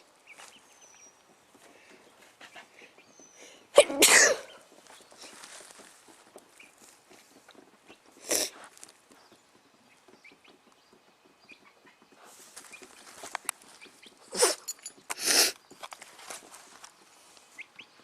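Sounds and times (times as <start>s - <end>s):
person sneezing: 3.8s - 4.5s
rustling: 4.5s - 10.1s, 11.7s - 17.6s.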